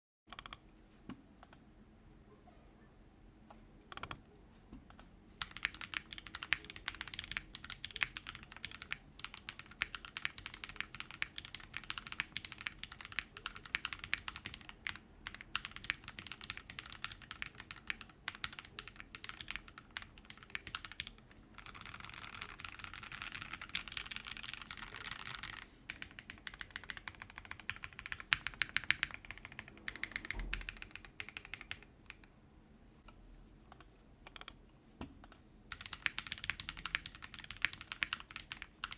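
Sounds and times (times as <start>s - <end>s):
mechanical keyboard typing: 0.3s - 0.6s, 3.9s - 4.2s, 4.9s - 32.3s, 33.7s - 34.6s, 35.2s - 38.9s.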